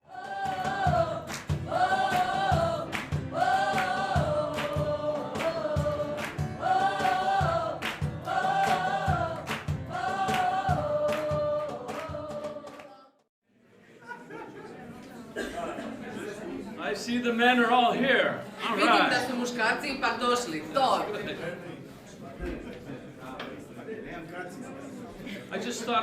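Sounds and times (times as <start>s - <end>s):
gospel choir singing: 0.0s - 13.3s
steady beat: 0.4s - 12.6s.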